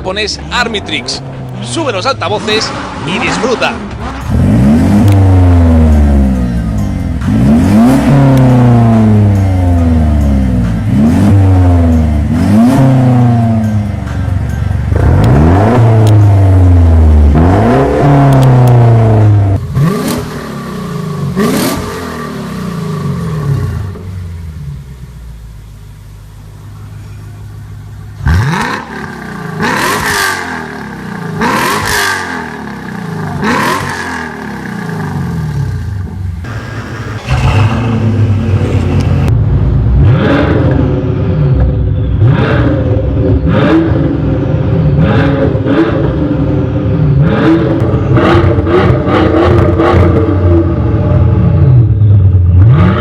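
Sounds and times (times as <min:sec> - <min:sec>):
car engine idling: 0:00.0 - 0:15.0, 0:35.8 - 0:42.1
sports car engine revving: 0:00.1 - 0:13.8, 0:14.9 - 0:25.2, 0:28.2 - 0:53.0.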